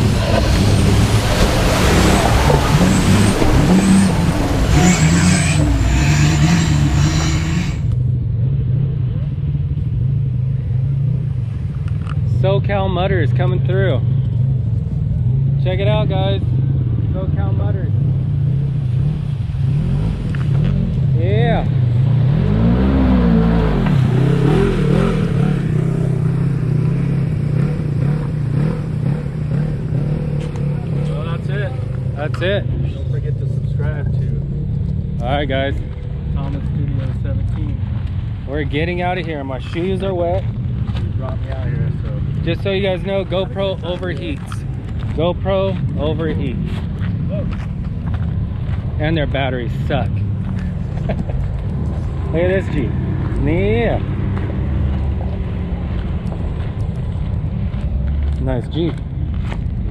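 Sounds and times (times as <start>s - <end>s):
steady rushing noise: 0.0s - 7.9s
off-road vehicle engine revving: 0.0s - 59.9s.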